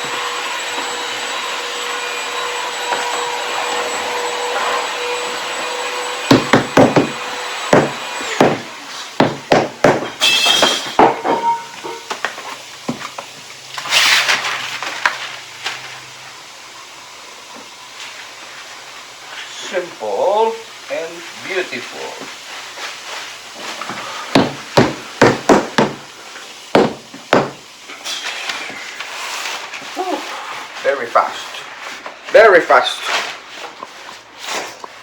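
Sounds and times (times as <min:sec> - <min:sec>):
motor whining and hissing: 0:00.0 - 0:09.2.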